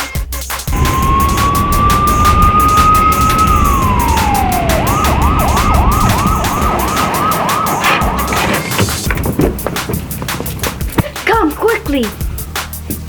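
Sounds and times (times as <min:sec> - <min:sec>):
background music with steady beat: 0:00.0 - 0:13.0
police siren wailing and yelping: 0:00.8 - 0:09.1.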